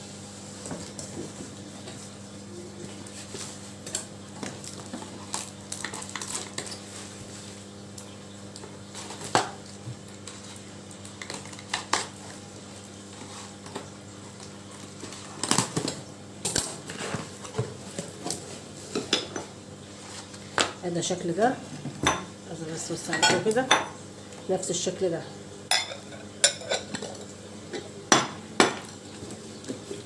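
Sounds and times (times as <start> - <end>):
ceramic dishes clinking: 23.1 - 24.0, 25.7 - 28.8.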